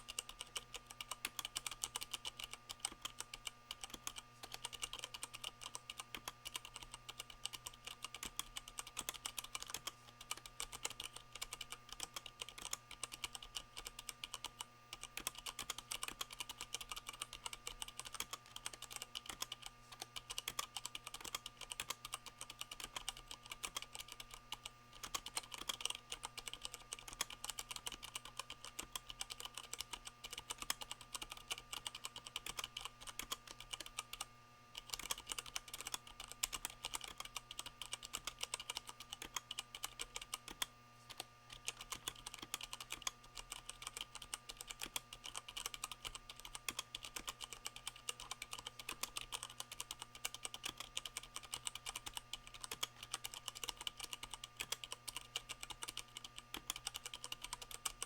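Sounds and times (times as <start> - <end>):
fast typing on mechanical keyboard: 0.0 - 58.0.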